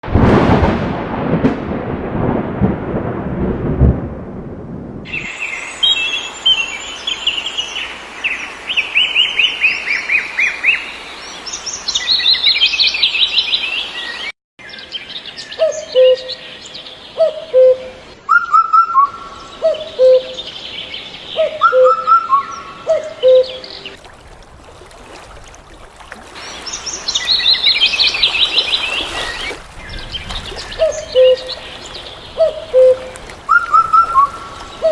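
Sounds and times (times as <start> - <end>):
small birds chirping and trilling: 5.1 - 17.4, 18.5 - 24.0, 26.3 - 34.9
lower two-part bird call: 17.2 - 20.4, 21.4 - 23.6, 32.4 - 34.9.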